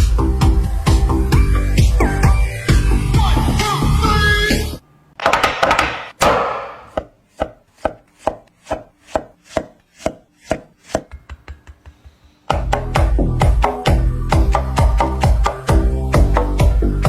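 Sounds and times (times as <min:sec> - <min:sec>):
knife chopping on cutting board: 0:06.2 - 0:12.9.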